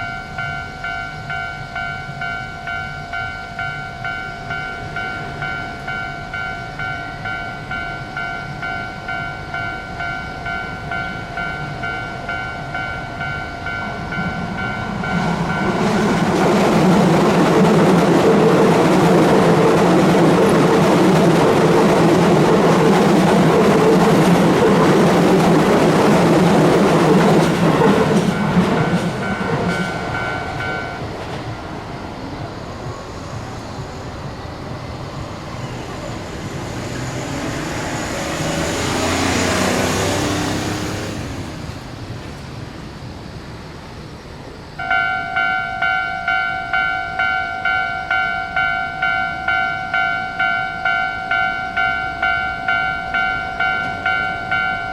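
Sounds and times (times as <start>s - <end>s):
level crossing warning bell: 0.0s - 31.4s, 44.8s - 54.9s
electric train passing: 0.0s - 54.9s.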